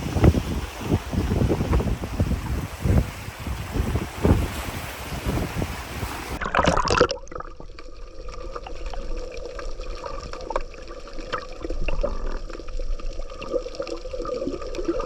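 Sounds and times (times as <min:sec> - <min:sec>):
wind buffeting microphone: 0:00.0 - 0:06.4
sea surf: 0:00.0 - 0:06.5
water trickling and gurgling: 0:00.0 - 0:15.0.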